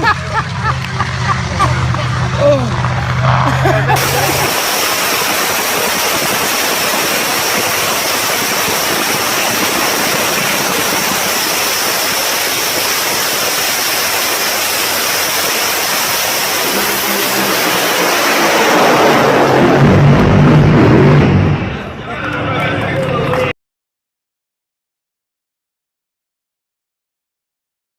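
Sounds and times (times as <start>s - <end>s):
deeper engine note: 0.0s - 12.2s, 15.8s - 23.5s
dragster engines roaring: 0.0s - 23.5s.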